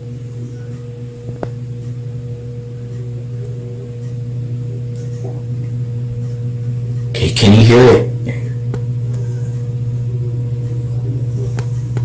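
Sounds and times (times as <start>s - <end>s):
ceiling fan motor buzzing: 0.0s - 12.0s.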